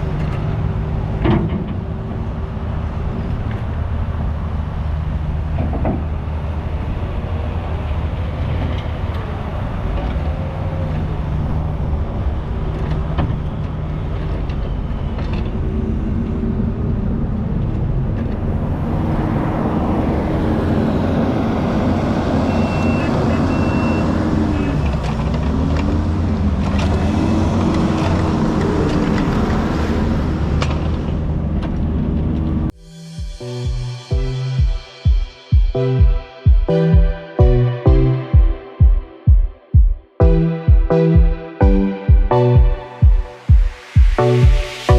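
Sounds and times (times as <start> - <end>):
excavator diesel engine under load: 0.0 - 32.7.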